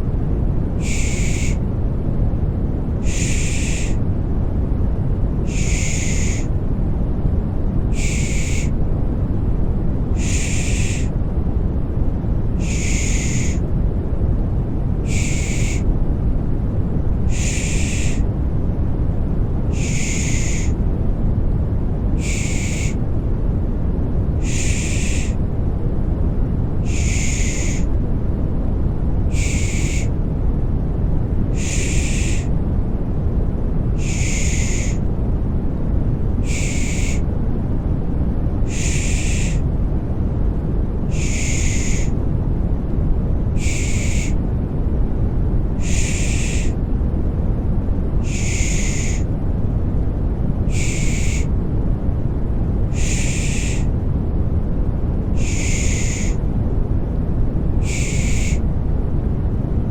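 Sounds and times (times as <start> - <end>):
deep white noise rush: 0.0 - 59.9
person shushing: 53.0 - 53.8.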